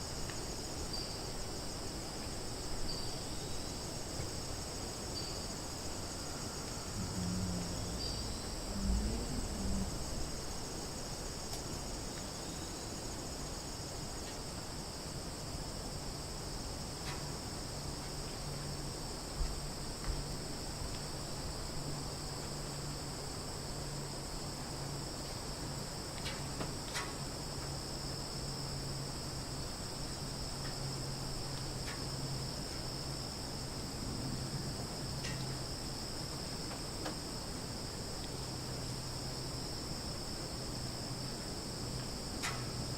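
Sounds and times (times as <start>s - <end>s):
low hum: 6.7s - 11.0s.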